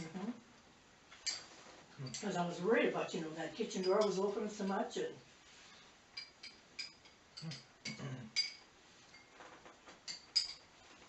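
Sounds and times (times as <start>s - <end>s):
cutlery clinking on plates: 1.2s - 2.3s, 6.2s - 10.7s.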